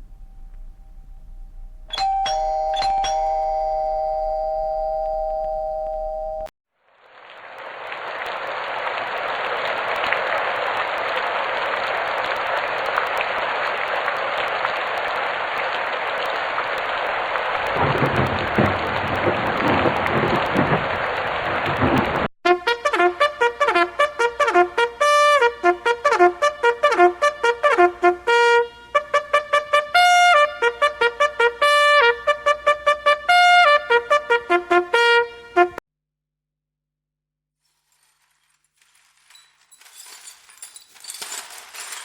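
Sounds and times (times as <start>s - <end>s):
low rumbling: 0.0s - 1.9s
two-tone doorbell chime: 1.9s - 6.5s
steady rain-like hiss: 6.8s - 22.3s.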